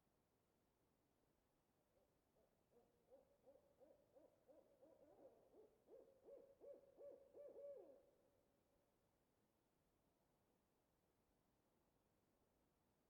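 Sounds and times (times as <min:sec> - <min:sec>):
distant owl hooting: 0:03.1 - 0:08.0.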